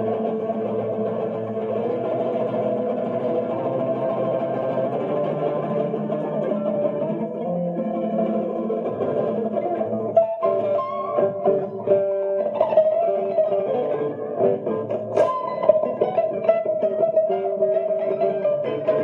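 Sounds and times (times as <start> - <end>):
harp-strung guitar played with a pick: 0.0 - 19.0.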